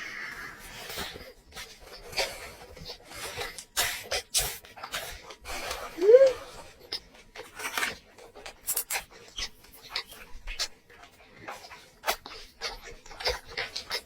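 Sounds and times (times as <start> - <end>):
chewing and mouth-smacking: 0.9 - 14.0.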